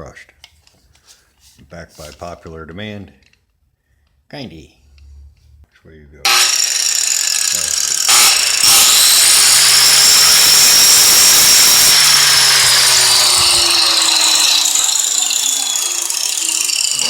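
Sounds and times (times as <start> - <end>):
power tool motor whine: 6.3 - 17.0.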